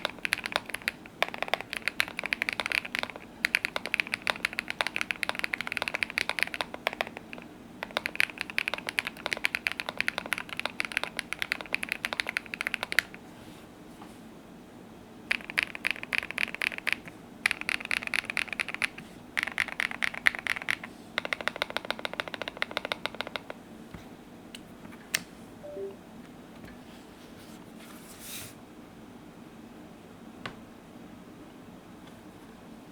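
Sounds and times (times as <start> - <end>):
mechanical keyboard typing: 0.0 - 13.2, 15.3 - 23.6.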